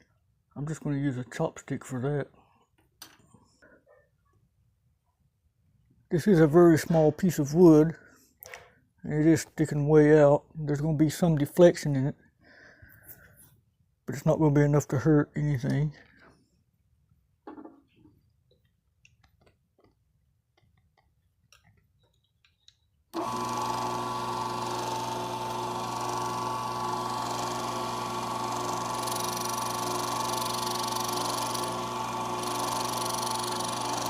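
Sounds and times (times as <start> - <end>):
router spindle whining: 23.1 - 34.0.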